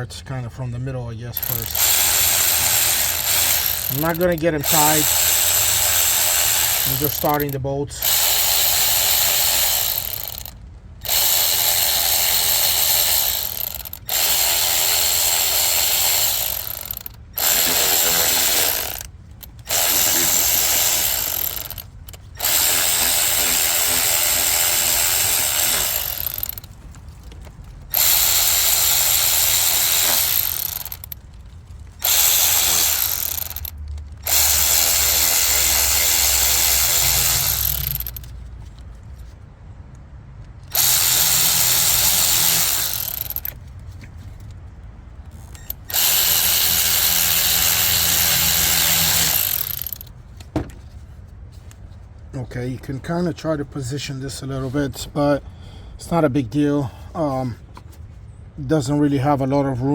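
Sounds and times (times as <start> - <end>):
power tool running bolts: 1.4 - 26.8, 27.9 - 31.3, 31.9 - 38.4, 40.6 - 43.6, 45.3 - 50.6.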